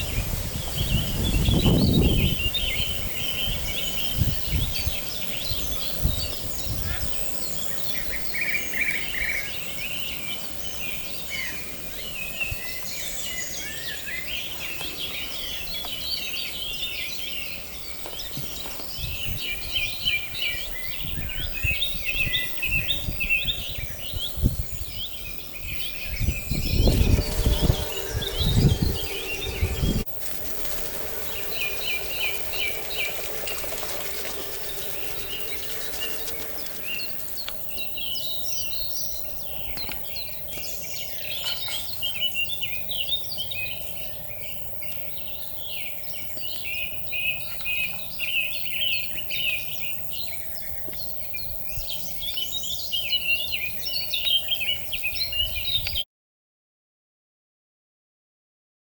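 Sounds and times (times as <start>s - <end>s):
songbirds singing: 0.0s - 56.0s
loud low rumble: 26.2s - 38.2s.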